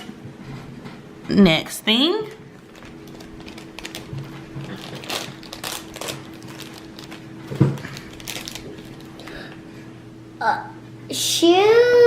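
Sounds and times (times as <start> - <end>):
plastic packet crinkling and tearing: 2.5 - 9.4.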